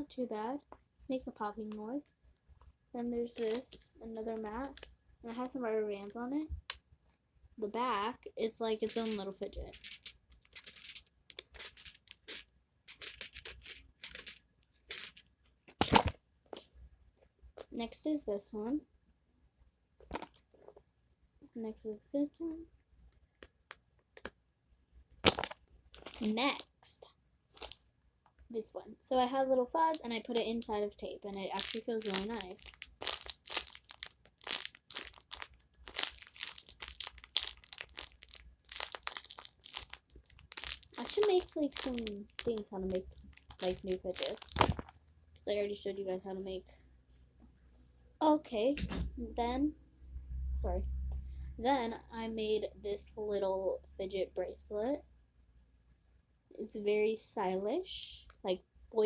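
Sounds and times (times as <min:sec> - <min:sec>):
tape fidget crinkling: 0:03.3 - 0:05.0, 0:08.8 - 0:16.7, 0:25.1 - 0:27.8, 0:29.8 - 0:30.8, 0:31.4 - 0:45.2
thump: 0:48.8 - 0:49.2.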